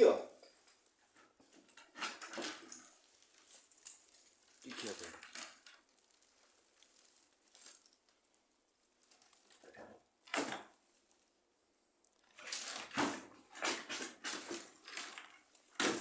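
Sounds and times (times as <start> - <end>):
debris and rotten wood crunching: 1.6 - 8.4, 12.2 - 16.0.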